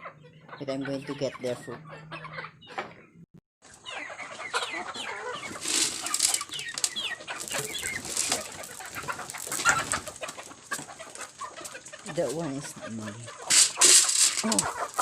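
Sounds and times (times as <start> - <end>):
chickens clucking: 0.0 - 15.0
scratchy rustling: 5.4 - 10.6, 13.4 - 15.0.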